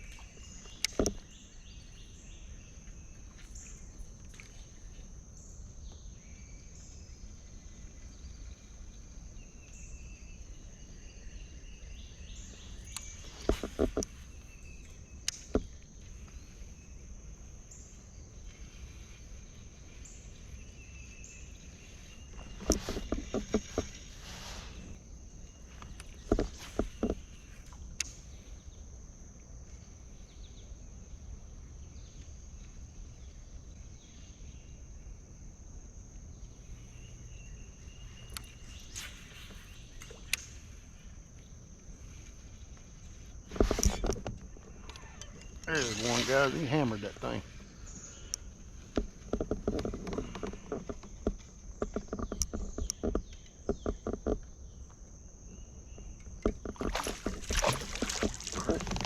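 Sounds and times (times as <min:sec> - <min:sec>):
insects droning: 0:00.0 - 0:59.0
faint chirps: 0:36.3 - 0:49.0, 0:55.5 - 0:59.0
sharp clicks and knocks: 0:48.9 - 0:54.5.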